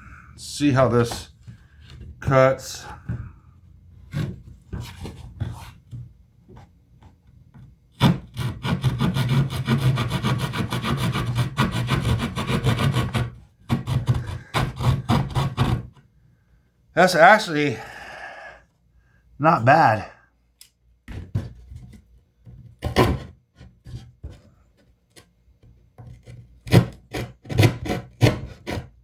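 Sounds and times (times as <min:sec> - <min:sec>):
small hand saw rasping: 0:08.0 - 0:16.0, 0:26.0 - 0:29.0.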